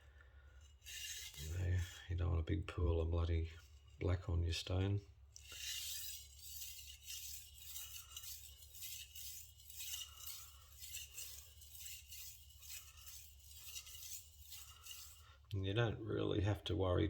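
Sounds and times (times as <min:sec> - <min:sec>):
knife scraping on whetstone: 0:00.6 - 0:02.0, 0:05.4 - 0:15.4.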